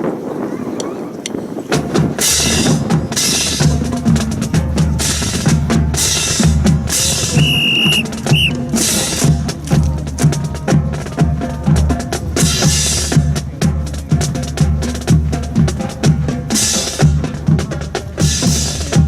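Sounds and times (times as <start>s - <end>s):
marching drum corps: 1.7s - 19.0s
whistle blast: 7.3s - 8.6s.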